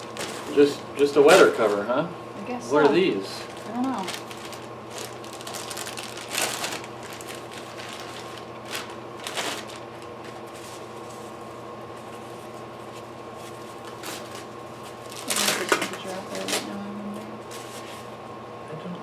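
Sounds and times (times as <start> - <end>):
packaging rustling: 0.0 - 1.8, 3.4 - 11.4, 12.0 - 16.7
steady low hum: 0.0 - 19.0.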